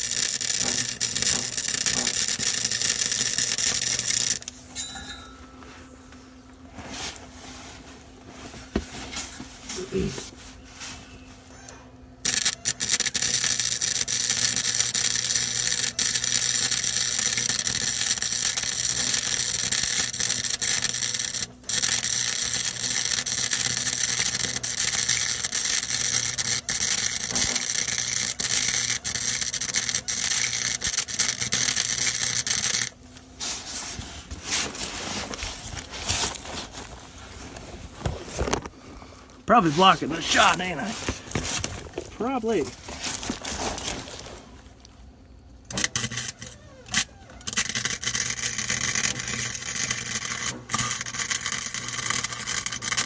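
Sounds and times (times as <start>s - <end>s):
welding arc crackling: 0.0s - 5.3s, 12.2s - 33.8s, 39.5s - 45.0s, 45.7s - 53.0s
handling noises: 4.5s - 11.7s, 32.9s - 47.4s.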